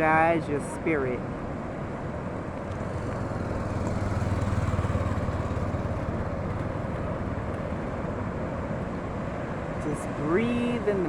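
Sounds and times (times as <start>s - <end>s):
motor engine low rumble: 1.5s - 10.4s.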